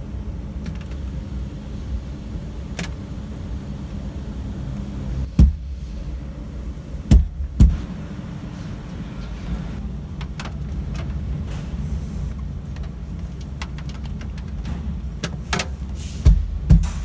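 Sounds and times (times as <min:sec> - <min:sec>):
steady low rumble: 0:00.0 - 0:17.0
dull thumps on window glass: 0:07.1 - 0:07.8, 0:16.3 - 0:17.0.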